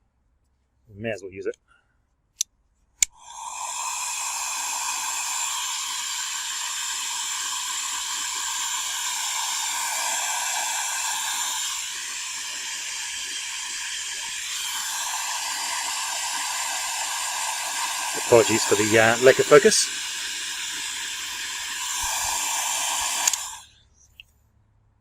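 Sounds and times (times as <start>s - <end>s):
heat gun fan hissing: 3.0s - 23.7s
heat gun switch clicks: 22.0s - 23.6s.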